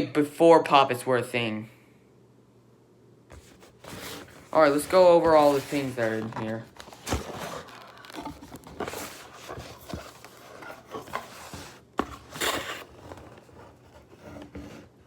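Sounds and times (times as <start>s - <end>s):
short rustle: 3.3s - 11.8s
hands rummaging through toys: 3.3s - 14.8s.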